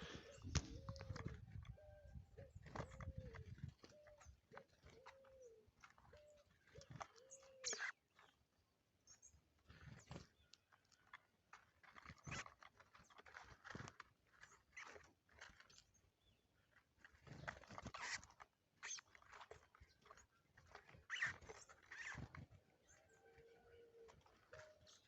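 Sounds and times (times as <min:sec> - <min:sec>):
low hooting coo: 0:00.0 - 0:04.2, 0:23.0 - 0:24.8.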